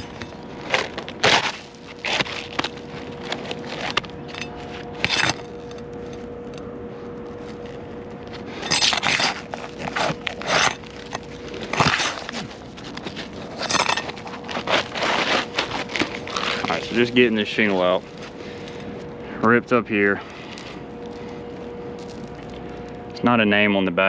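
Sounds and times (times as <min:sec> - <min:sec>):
hand tools scraping shingle: 0:00.0 - 0:05.5, 0:08.4 - 0:18.7
faint steady hum: 0:00.0 - 0:24.0.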